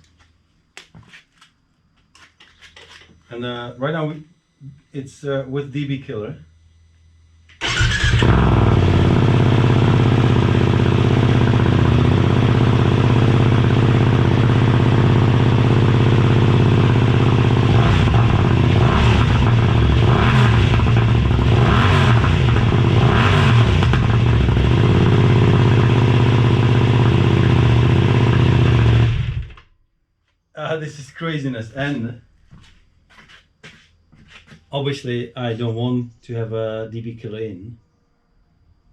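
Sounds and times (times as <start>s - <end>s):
motorcycle engine idling: 7.6s - 21.6s, 22.3s - 23.0s, 23.8s - 29.5s.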